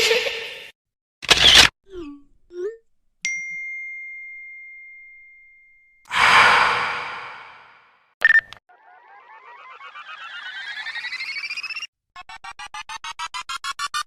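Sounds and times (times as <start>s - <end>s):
high ding: 3.3s - 6.0s
long breathy sigh: 6.1s - 7.9s.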